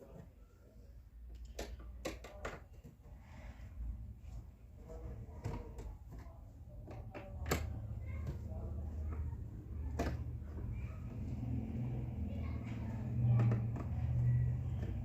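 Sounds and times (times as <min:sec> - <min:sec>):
handling clicks and knocks: 0:01.3 - 0:03.0, 0:05.2 - 0:10.9, 0:12.9 - 0:15.0.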